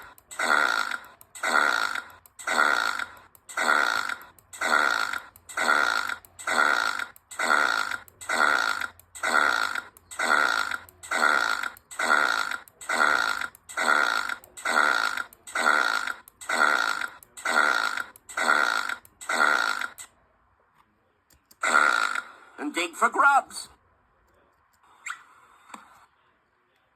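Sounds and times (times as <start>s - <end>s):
cartoon character burping: 21.6s - 22.3s.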